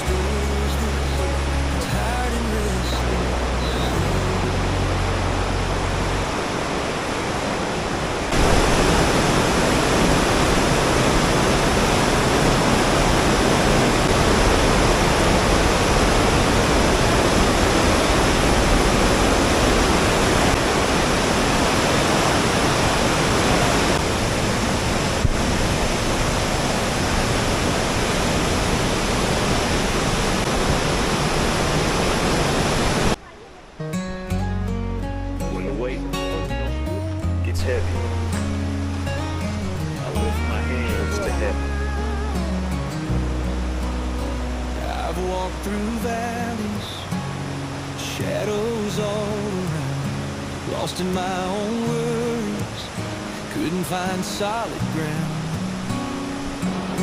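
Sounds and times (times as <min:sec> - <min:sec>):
fast-flowing water rushing: 0:00.0 - 0:34.3, 0:35.6 - 0:57.0.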